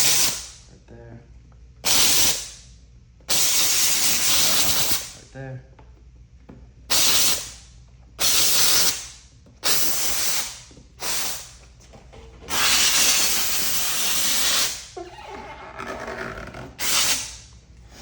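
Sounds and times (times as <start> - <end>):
loud hissing bursts: 1.8 - 2.6, 3.3 - 5.2, 6.9 - 11.6, 12.5 - 15.0, 16.8 - 17.5.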